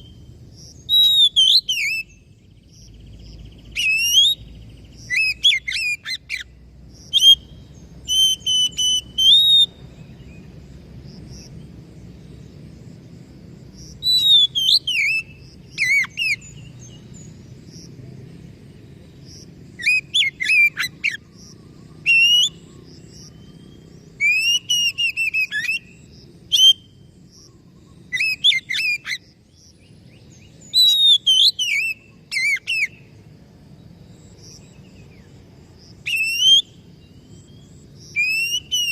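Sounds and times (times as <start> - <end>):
bird singing whistled phrases: 0.0 - 2.3, 3.6 - 6.5, 7.1 - 9.8, 14.0 - 17.0, 19.8 - 21.2, 22.0 - 27.0, 28.0 - 29.2, 30.4 - 33.1, 36.0 - 38.9.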